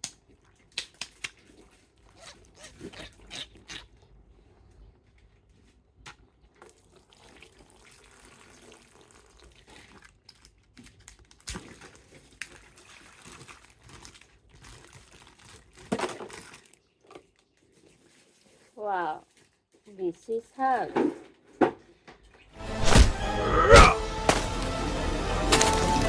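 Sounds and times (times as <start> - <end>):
toy packaging rustling and crinkling: 9.7 - 21.4, 25.4 - 26.0.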